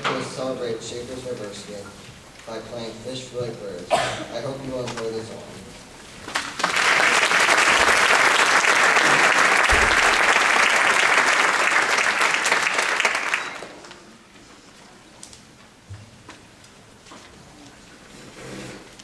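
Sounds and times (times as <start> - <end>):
audience applauding: 6.3 - 14.0.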